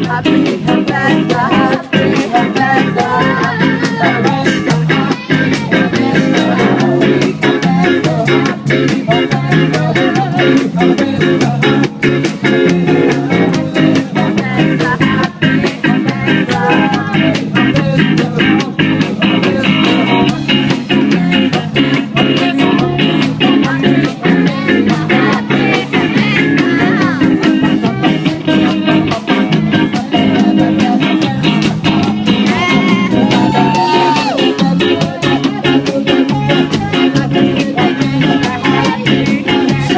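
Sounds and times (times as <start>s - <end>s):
fast drum beat: 0.0s - 39.9s
guitar: 0.0s - 39.9s.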